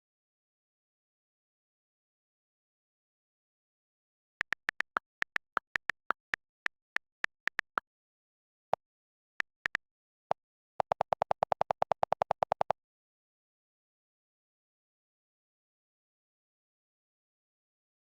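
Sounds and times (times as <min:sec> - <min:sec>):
low-pitched electronic ticks: 0:04.4 - 0:07.8, 0:10.8 - 0:12.8
high-pitched electronic clicks: 0:10.8 - 0:12.8.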